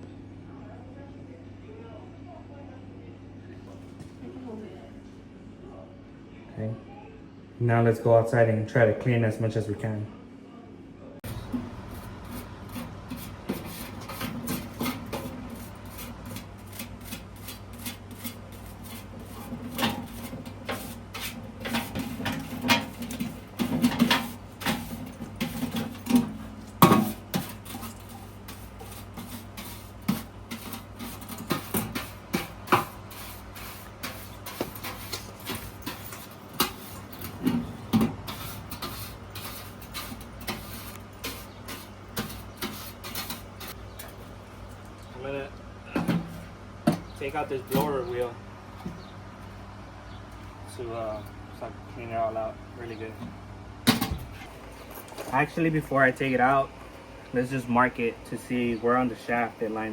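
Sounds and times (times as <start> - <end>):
blower housing knocking and rubbing: 11.2 - 44.4, 45.9 - 50.5.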